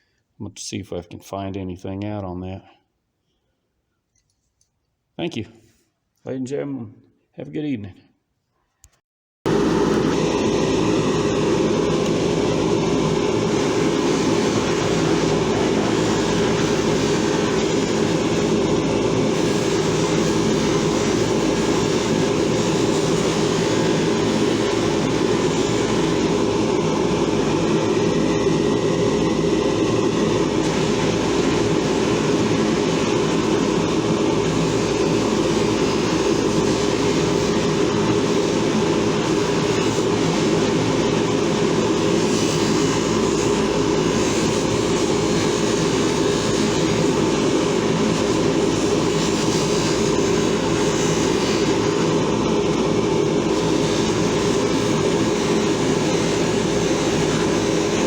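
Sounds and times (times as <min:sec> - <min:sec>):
power tool motor running: 0:09.5 - 0:58.0.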